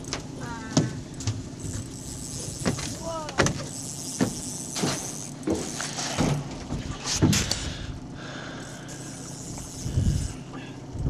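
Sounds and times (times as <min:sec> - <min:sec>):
boat motor running steadily: 0:00.0 - 0:11.0
knocks and rattles on boat: 0:00.1 - 0:07.5.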